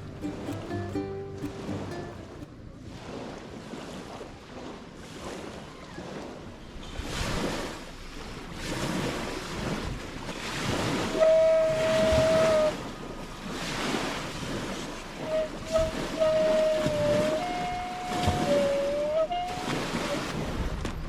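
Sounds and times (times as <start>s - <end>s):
steady high tone: 0.0s - 2.5s
lake waves washing on shore: 0.0s - 21.0s
wind gusts on microphone: 0.0s - 21.0s.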